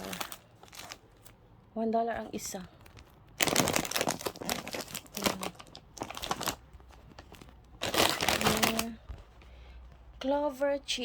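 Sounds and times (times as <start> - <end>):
plastic packets crinkling: 0.0 - 1.4, 2.4 - 9.4.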